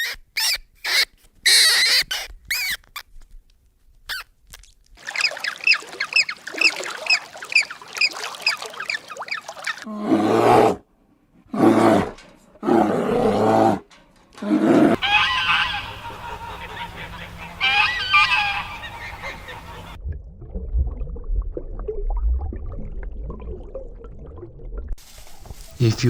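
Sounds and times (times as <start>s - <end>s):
loud animal calls: 14.4s - 20.0s.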